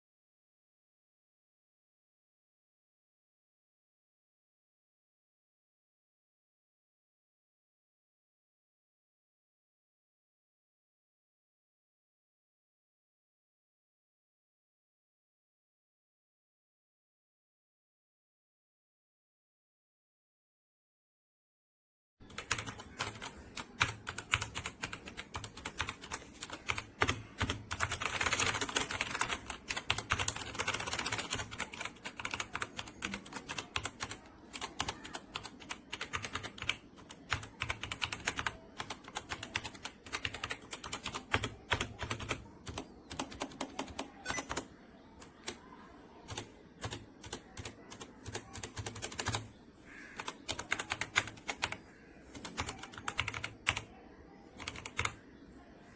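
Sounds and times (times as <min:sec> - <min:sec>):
mechanical keyboard typing: 0:22.2 - 0:49.6, 0:50.2 - 0:53.9, 0:54.6 - 0:55.2.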